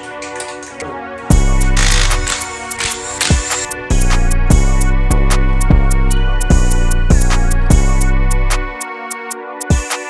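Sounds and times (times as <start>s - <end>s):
synth chords with beat: 0.8s - 8.8s
drum hit: 3.9s - 7.9s.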